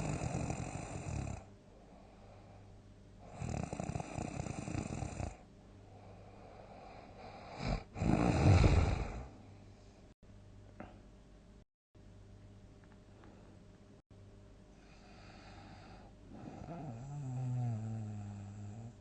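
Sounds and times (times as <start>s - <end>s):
person snoring loudly: 0.0s - 1.5s, 3.2s - 5.4s, 7.2s - 9.4s, 16.3s - 19.0s
soft breathing: 1.6s - 3.4s, 5.8s - 10.2s, 14.7s - 16.7s.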